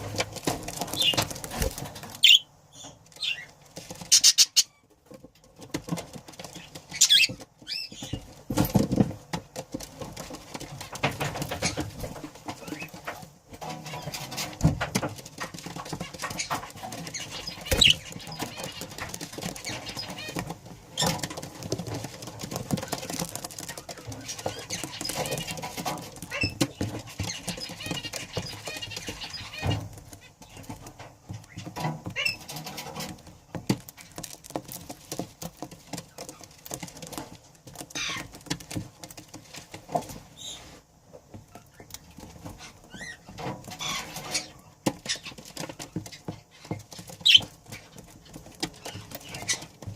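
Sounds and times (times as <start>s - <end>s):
scratching and tapping: 0.0s - 49.9s
budgerigars chattering: 2.2s - 2.5s, 17.2s - 18.8s.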